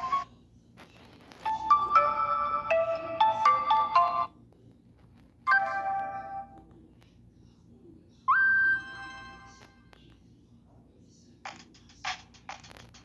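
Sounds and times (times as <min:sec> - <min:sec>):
phone ringtone melody: 0:00.0 - 0:00.3, 0:01.5 - 0:04.4, 0:05.5 - 0:06.6, 0:08.3 - 0:09.7.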